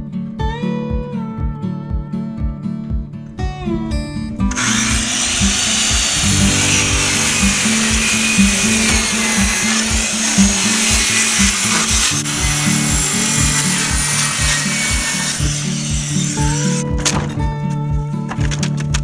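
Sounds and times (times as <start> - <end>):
power saw cutting wood: 3.4 - 17.4.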